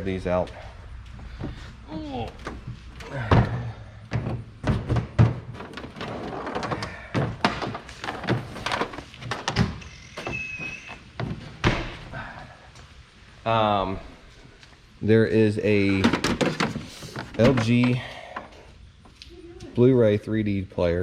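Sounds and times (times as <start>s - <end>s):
thunks and knocks of handled units: 2.2s - 12.1s, 15.7s - 18.7s.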